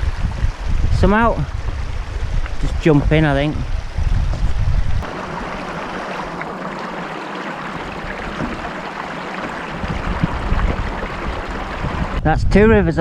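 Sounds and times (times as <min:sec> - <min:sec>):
low rumble on microphone: 0:00.0 - 0:13.0
river water rushing: 0:05.0 - 0:12.2.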